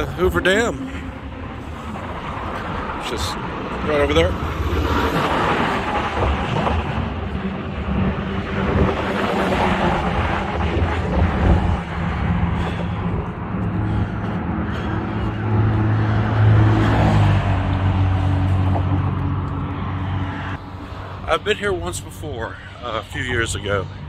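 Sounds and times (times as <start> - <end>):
passing vehicle engine: 0.0 - 21.6
road traffic hum: 0.0 - 24.0.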